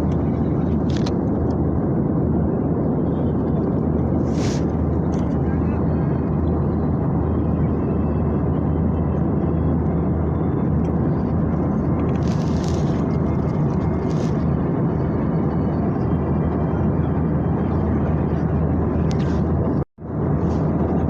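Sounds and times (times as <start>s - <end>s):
airliner cabin noise: 0.0s - 21.0s.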